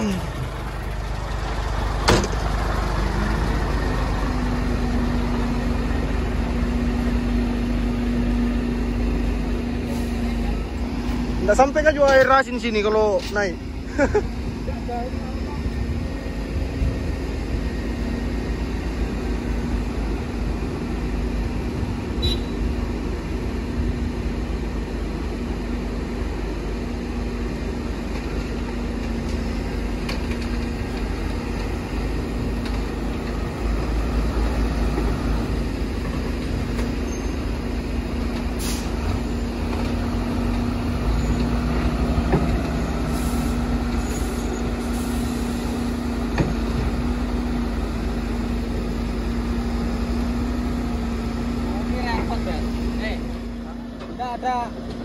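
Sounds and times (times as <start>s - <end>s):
truck diesel engine rumbling: 0.0s - 55.0s.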